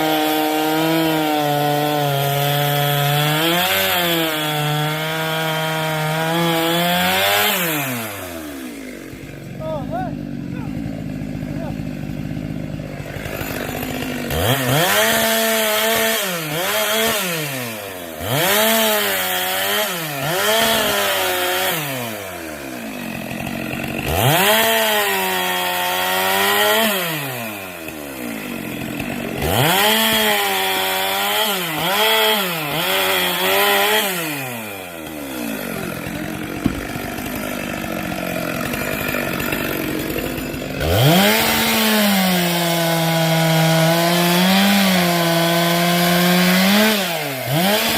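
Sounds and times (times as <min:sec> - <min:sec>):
chainsaw revving: 0:00.0 - 0:47.9
chain rasping through wood: 0:25.5 - 0:47.9.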